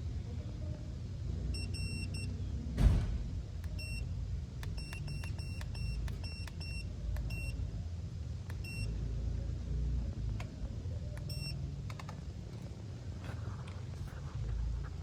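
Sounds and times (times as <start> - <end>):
low steady rumble: 0.0 - 15.0
loud thump: 2.8 - 3.4.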